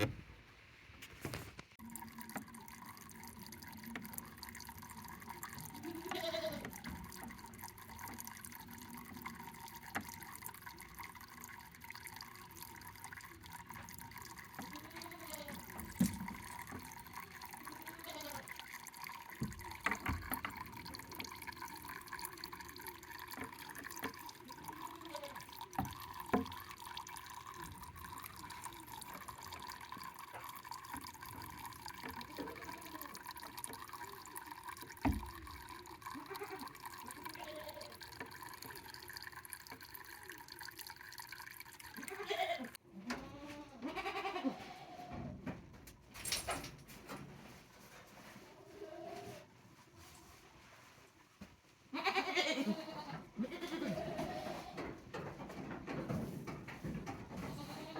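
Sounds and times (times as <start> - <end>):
water dripping and trickling: 1.3 - 42.8, 53.3 - 57.9.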